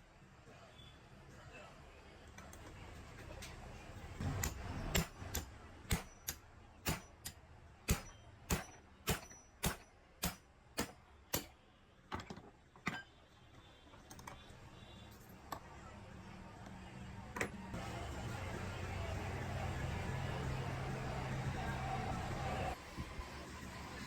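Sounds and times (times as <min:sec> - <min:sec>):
hammer striking metal: 0:04.2 - 0:11.6.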